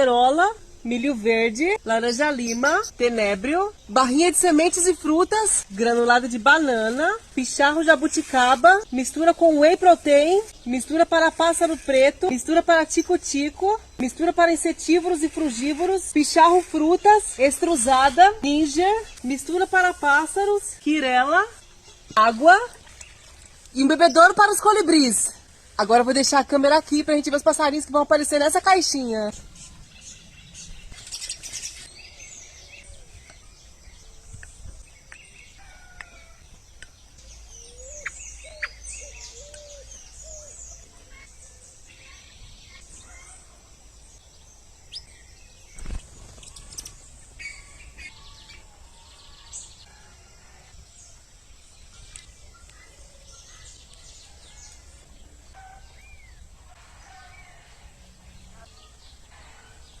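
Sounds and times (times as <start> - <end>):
wild birds chirping and calling: 29.3 - 60.0.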